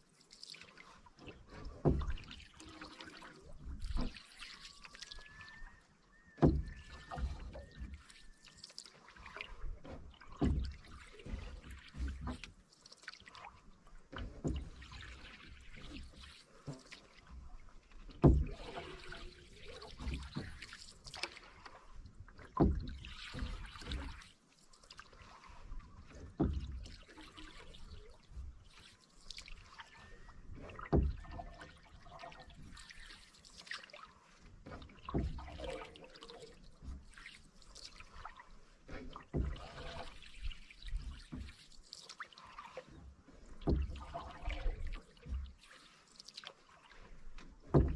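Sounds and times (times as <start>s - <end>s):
paddle knock and splash: 0.0s - 47.9s
water dripping off paddle: 0.0s - 47.9s.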